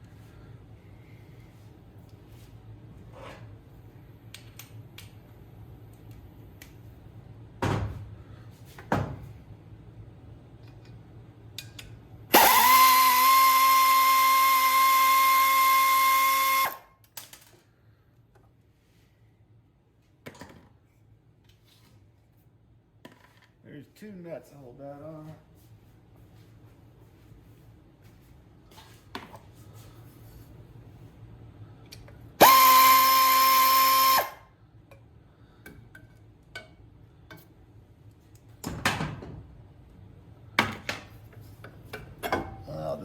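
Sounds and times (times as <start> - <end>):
power drill motor whine: 12.3 - 16.9, 32.4 - 34.4.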